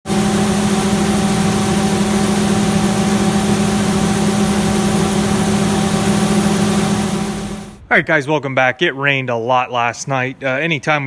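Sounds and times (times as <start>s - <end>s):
engine running: 0.0s - 7.8s.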